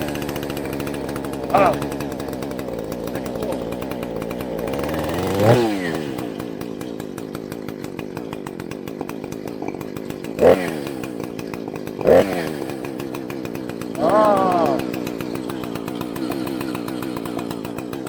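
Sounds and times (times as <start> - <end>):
chainsaw idling and revving: 0.0 - 18.0.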